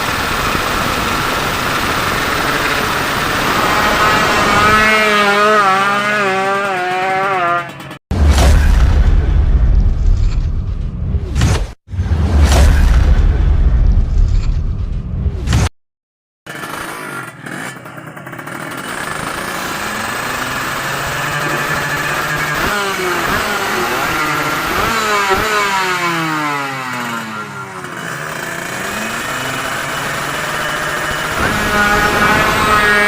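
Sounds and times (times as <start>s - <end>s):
motorcycle engines revving: 0.0s - 8.0s, 16.5s - 33.0s.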